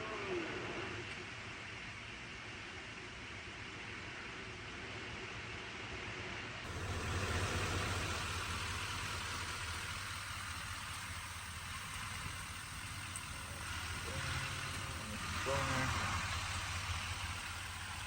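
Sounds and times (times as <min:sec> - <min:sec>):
heavy truck engine idling: 0:06.7 - 0:18.0.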